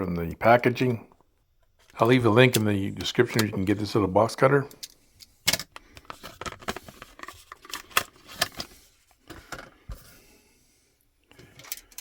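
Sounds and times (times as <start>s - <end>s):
plastic packaging clicking and crackling: 4.7s - 9.8s.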